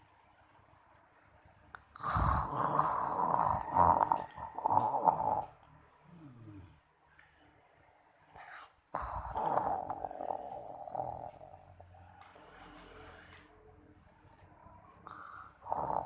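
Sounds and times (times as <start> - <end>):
loud rattling snore: 2.0 - 5.6, 8.9 - 12.0, 15.6 - 16.0.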